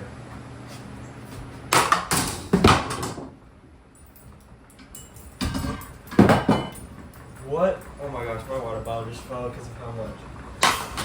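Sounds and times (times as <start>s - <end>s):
ceiling fan clattering crashes: 1.7s - 3.4s, 5.1s - 9.0s, 10.6s - 11.0s.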